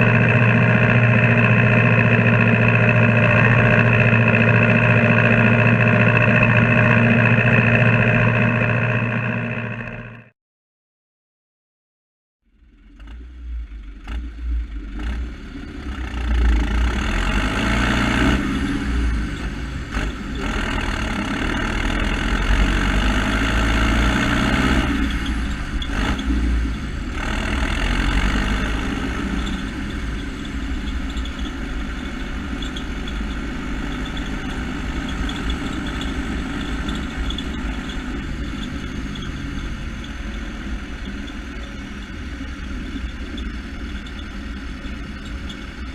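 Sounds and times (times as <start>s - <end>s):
rush of wind or road noise: 0.0s - 10.2s, 13.6s - 45.9s
vehicle engine accelerating: 0.0s - 10.3s, 12.5s - 45.9s.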